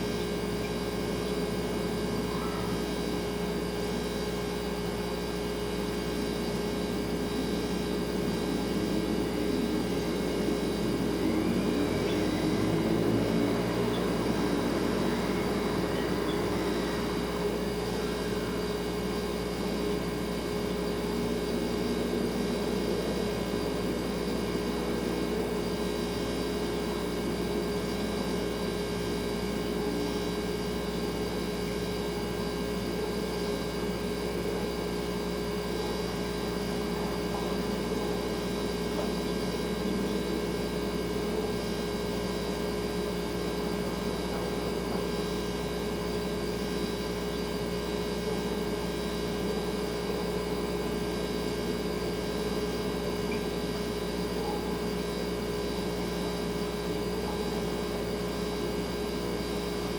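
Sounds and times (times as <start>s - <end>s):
refrigerator humming: 0.0s - 59.9s.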